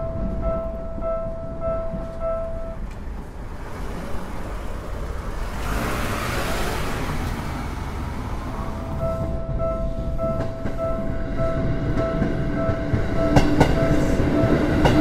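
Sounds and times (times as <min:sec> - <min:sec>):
level-crossing warning bell: 0:00.0 - 0:04.4, 0:08.8 - 0:15.0
road vehicle passing: 0:02.7 - 0:15.0.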